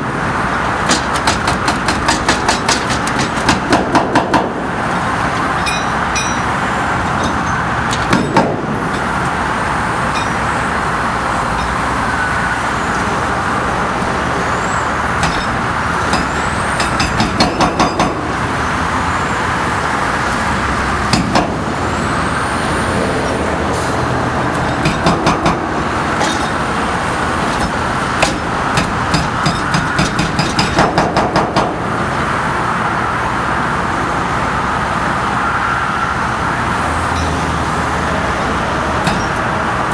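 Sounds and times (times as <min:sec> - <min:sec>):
engine noise: 0:00.0 - 0:39.9
traffic noise: 0:00.0 - 0:39.9
hydraulic breaker pounding concrete: 0:00.8 - 0:04.7, 0:07.1 - 0:08.9, 0:15.2 - 0:18.4, 0:21.1 - 0:21.8, 0:24.5 - 0:26.8, 0:27.4 - 0:31.8.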